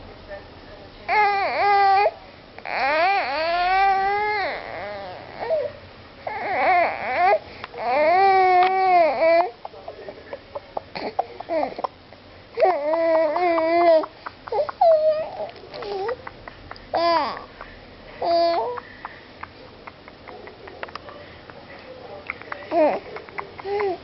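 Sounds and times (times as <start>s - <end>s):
young child crying: 16.9s - 17.5s.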